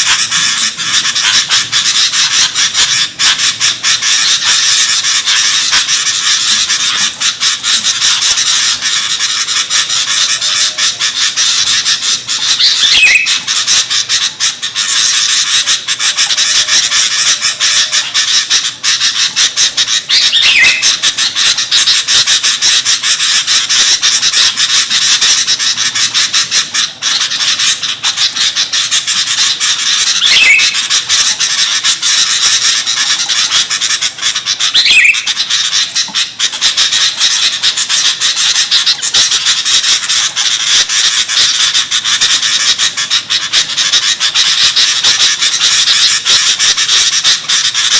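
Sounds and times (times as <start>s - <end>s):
birds chattering chorus: 0.0s - 47.9s
bird call falling in pitch: 12.6s - 13.4s, 20.2s - 20.9s, 30.2s - 30.9s, 34.7s - 35.5s.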